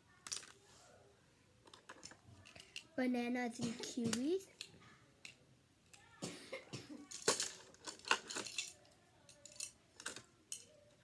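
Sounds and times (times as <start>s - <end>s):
plastic pieces clicking and tapping: 0.2s - 0.6s, 1.6s - 2.9s, 7.1s - 10.7s.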